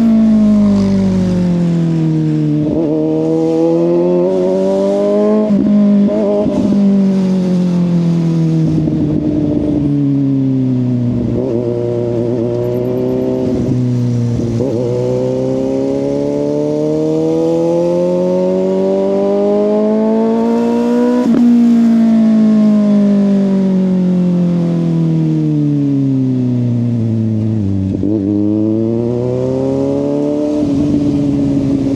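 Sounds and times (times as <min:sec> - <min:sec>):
motorcycle engine accelerating: 0:00.0 - 0:31.9.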